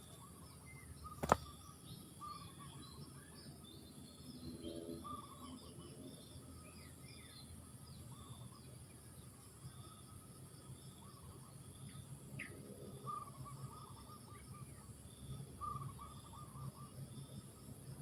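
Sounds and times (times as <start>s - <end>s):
small birds chirping: 0.0s - 17.8s
sharp click: 1.2s - 1.5s.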